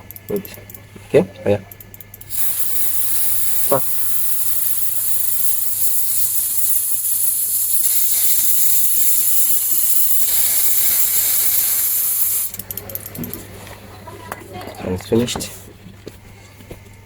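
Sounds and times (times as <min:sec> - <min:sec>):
fuel injectors spraying hiss: 0:02.2 - 0:12.7.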